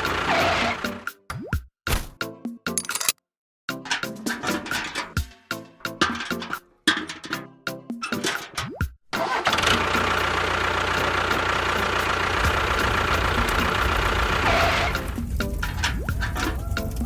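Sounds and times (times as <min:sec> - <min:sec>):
background music: 0:03.7 - 0:08.9.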